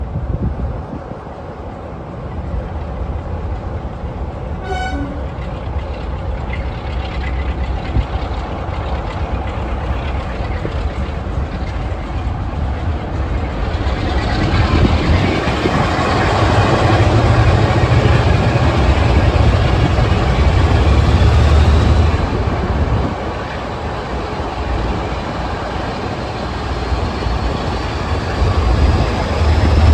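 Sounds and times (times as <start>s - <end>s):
diesel locomotive rumbling: 0.0s - 29.9s
locomotive horn toot: 4.6s - 5.6s.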